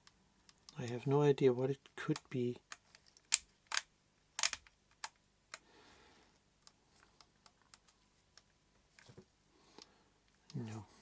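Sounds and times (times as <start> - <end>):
camera control clicks: 4.4 - 4.6.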